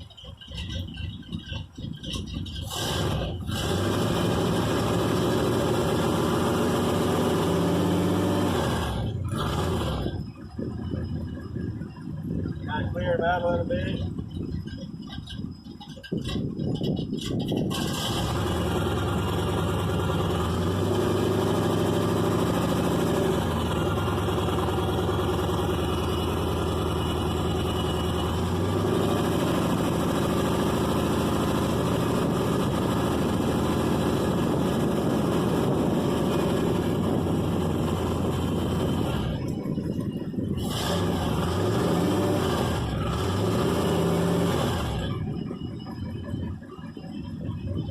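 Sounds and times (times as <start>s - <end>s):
big engine revving: 0.5s - 14.7s, 16.2s - 47.8s.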